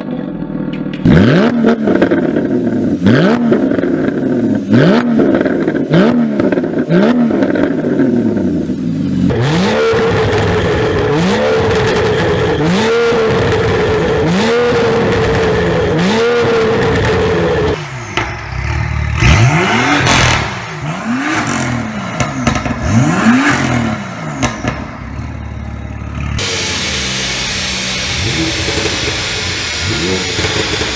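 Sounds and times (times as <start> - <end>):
car engine revving: 0.0 - 30.9
steady droning tone: 8.6 - 19.2, 22.8 - 30.9
exhaust pops and crackles: 9.4 - 25.3, 26.4 - 30.9.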